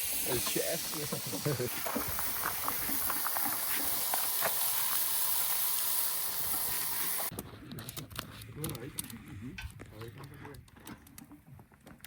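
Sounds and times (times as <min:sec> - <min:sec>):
food sizzling in a frying pan: 0:00.0 - 0:07.3.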